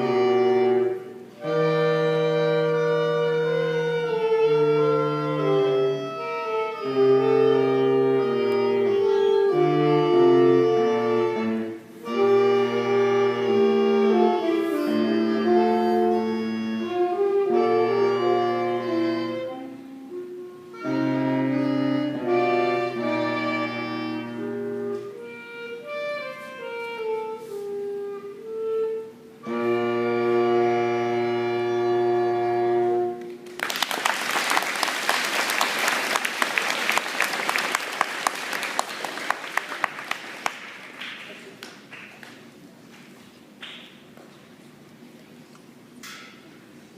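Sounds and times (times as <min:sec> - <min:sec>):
audience applause: 0:33.4 - 0:42.4.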